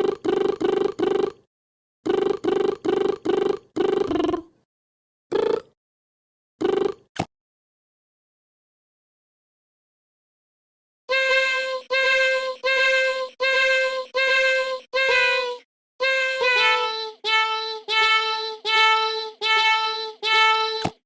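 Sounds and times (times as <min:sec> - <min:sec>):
high-pitched voice singing one note: 0:11.1 - 0:21.0.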